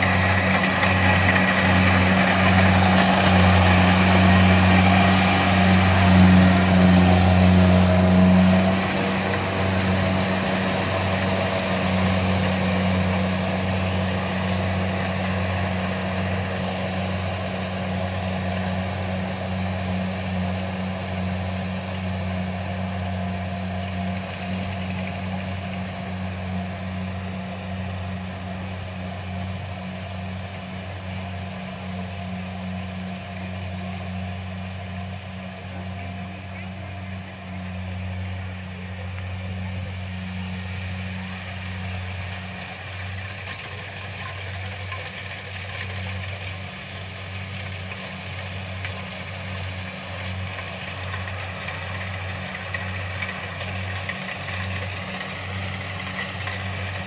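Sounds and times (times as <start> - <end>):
diesel engine droning: 0.0 - 57.0.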